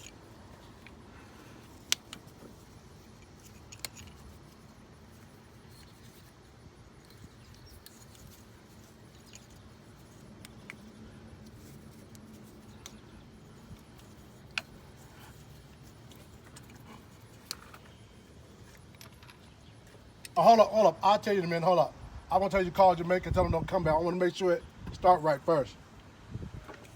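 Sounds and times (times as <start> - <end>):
hand tools and metal parts clinking: 0.0 - 20.4.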